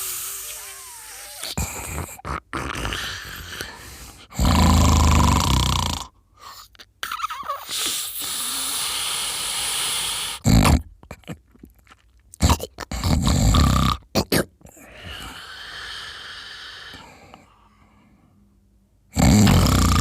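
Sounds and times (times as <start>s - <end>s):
breathy exhale: 0.0s - 1.6s, 2.9s - 4.4s, 7.7s - 10.4s, 14.8s - 18.5s
person snoring: 0.0s - 6.6s, 7.4s - 10.8s, 12.4s - 18.0s, 19.2s - 20.0s.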